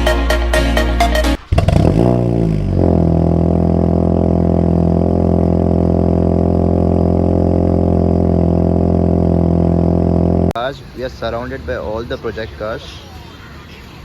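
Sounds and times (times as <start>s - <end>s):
car engine idling: 1.4s - 10.6s.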